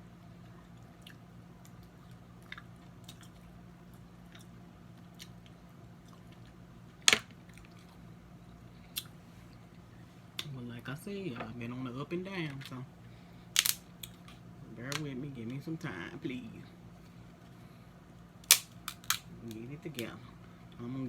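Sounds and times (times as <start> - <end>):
low steady hum: 0.0 - 21.0
soft chewing: 0.3 - 10.0
crab shells clicking: 13.6 - 15.1, 18.4 - 20.1
shell cracking: 13.6 - 15.1, 18.4 - 20.1.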